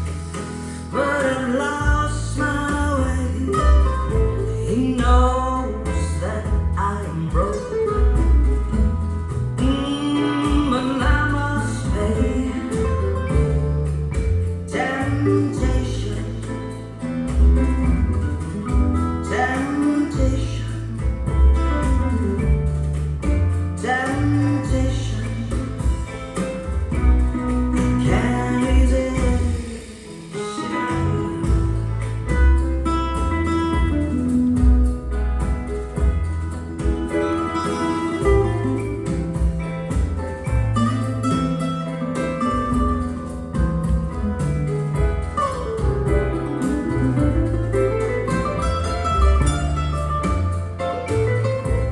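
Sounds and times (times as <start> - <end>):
deep bass line: 0.0 - 51.9
plucked guitar: 0.0 - 51.9
person singing: 0.4 - 8.4, 9.6 - 13.9, 14.6 - 16.8, 19.2 - 22.4, 23.8 - 26.1, 27.8 - 31.9.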